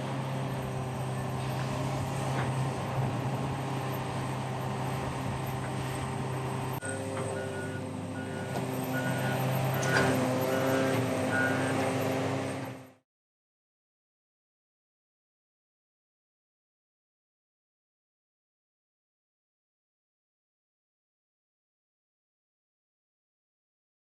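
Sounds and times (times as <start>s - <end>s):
excavator diesel engine running: 0.0s - 13.0s.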